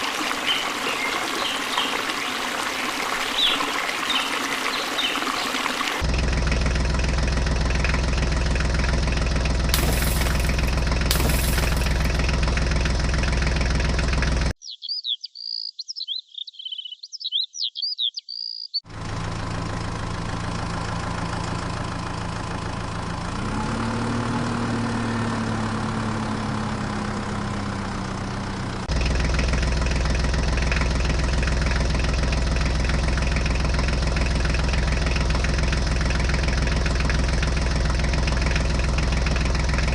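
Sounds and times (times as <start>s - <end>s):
tractor engine humming: 0.0s - 14.6s, 18.9s - 39.9s
high chirping: 14.6s - 18.8s
engine with rising pitch: 18.9s - 39.9s.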